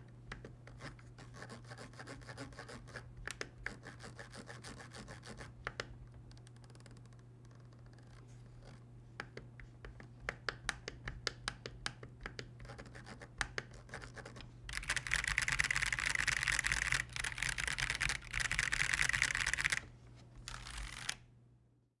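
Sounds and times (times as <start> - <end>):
mechanical keyboard typing: 12.4 - 19.9, 20.5 - 21.2.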